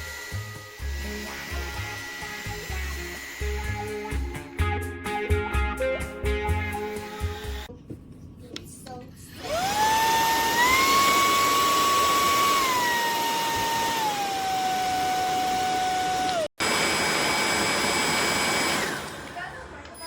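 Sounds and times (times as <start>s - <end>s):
vacuum cleaner motor whine: 0.0s - 4.4s, 6.8s - 7.7s, 9.4s - 20.0s.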